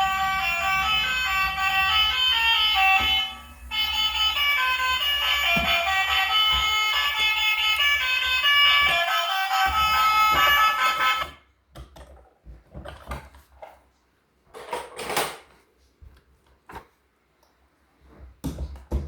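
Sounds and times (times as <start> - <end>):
tune playing: 0.0 - 11.4.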